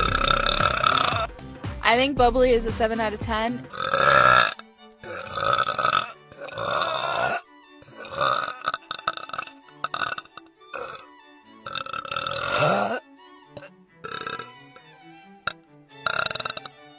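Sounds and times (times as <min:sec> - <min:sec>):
woman burping: 0:00.0 - 0:01.3, 0:03.7 - 0:11.0, 0:11.7 - 0:13.0, 0:14.1 - 0:14.5, 0:16.1 - 0:16.7
quiet background music: 0:00.0 - 0:16.9.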